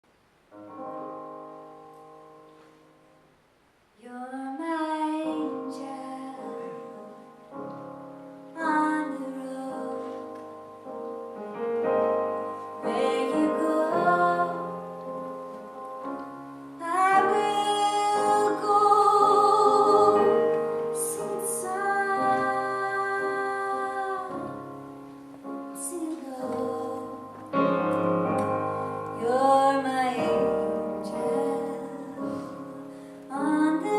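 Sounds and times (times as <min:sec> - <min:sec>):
piano chords: 0:00.5 - 0:03.4, 0:04.4 - 0:33.9
woman singing: 0:04.0 - 0:07.2, 0:08.6 - 0:10.3, 0:12.8 - 0:14.9, 0:16.8 - 0:24.7, 0:25.7 - 0:27.4, 0:29.2 - 0:33.9.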